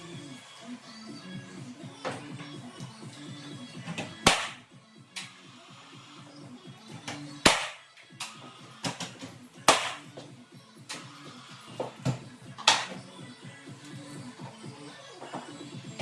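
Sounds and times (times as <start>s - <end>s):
background music: 0.0s - 16.0s
nail gun firing: 4.3s - 4.6s, 7.5s - 7.8s, 9.7s - 10.0s.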